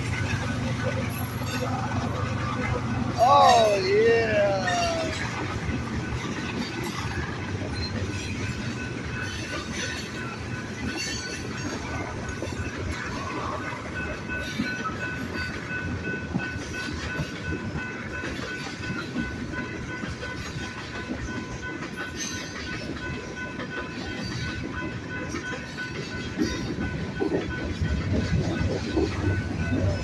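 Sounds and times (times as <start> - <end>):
train wheels clattering over rail joints: 0.0 - 3.2, 4.8 - 30.0
pulsing high ringing tone: 0.0 - 21.7.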